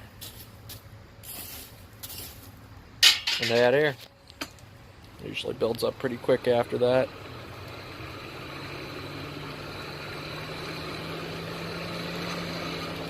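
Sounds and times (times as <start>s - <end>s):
forge blower humming: 4.8s - 13.0s.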